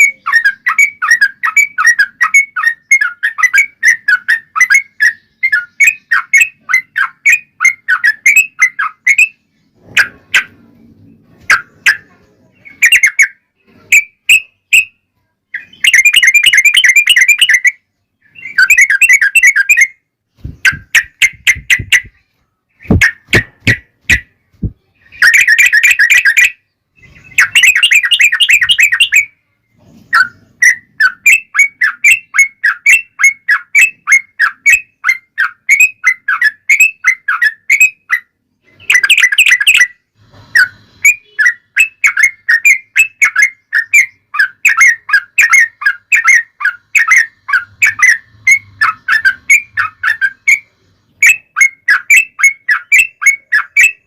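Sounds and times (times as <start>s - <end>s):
bird chirping: 0.0s - 54.0s
bird harsh chattering: 11.4s - 15.0s, 15.6s - 22.2s, 22.8s - 29.3s, 30.1s - 39.9s, 40.6s - 54.0s.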